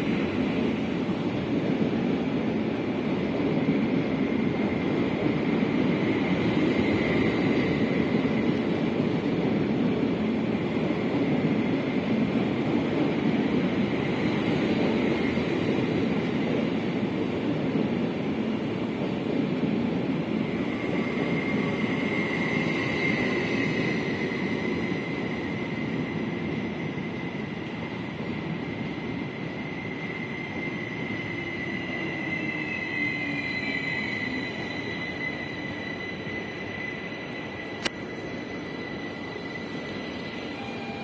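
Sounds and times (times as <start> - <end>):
electric train rumbling: 0.0 - 41.0
faint high whine: 20.8 - 41.0.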